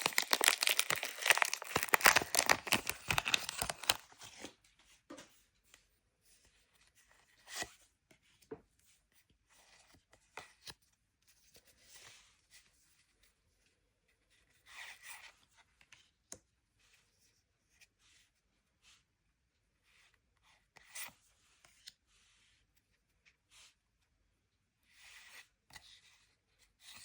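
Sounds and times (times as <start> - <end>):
cards and packaging rustling: 0.0 - 4.5.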